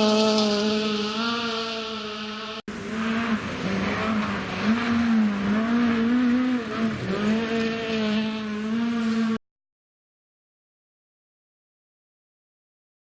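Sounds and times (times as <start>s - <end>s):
rally car engine revving: 0.0s - 9.4s.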